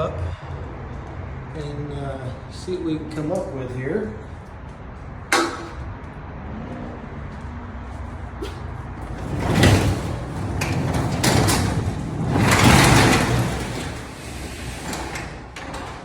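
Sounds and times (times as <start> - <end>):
garage door rolling and rumbling: 0.0 - 16.0
clicks and knocks: 9.0 - 16.0.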